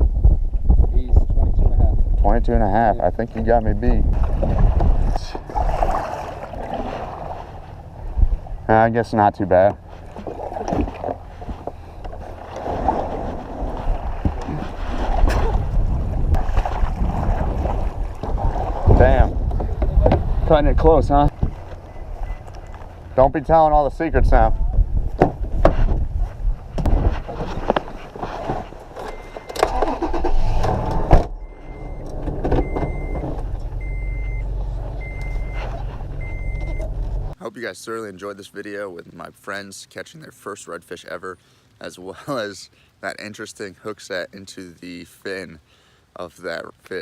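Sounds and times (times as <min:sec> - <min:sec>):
wind buffeting microphone: 0:00.0 - 0:08.9, 0:09.8 - 0:29.0
water around a kayak: 0:02.0 - 0:30.2, 0:32.5 - 0:47.0
high-pitched warning beep: 0:31.4 - 0:35.6, 0:36.2 - 0:36.9.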